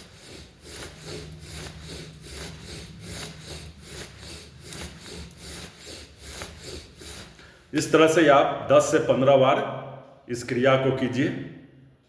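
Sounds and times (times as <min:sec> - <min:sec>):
rapid breathing through nose: 0:00.0 - 0:07.7.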